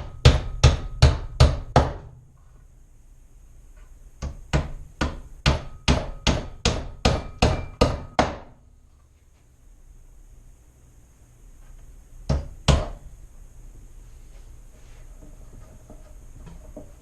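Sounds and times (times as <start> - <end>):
hammer striking nails into wood: 0.0 - 2.1, 4.2 - 8.5, 12.3 - 13.0.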